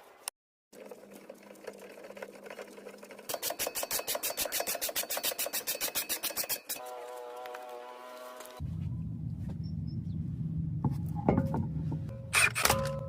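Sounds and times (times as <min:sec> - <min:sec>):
machine rattling in rapid strokes: 0:00.8 - 0:06.9
low steady hum: 0:08.5 - 0:13.0.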